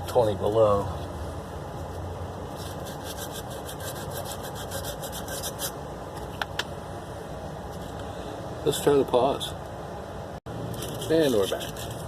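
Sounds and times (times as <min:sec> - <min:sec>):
sandpaper scrubbing metal pipe: 0:02.5 - 0:05.8, 0:10.8 - 0:12.0.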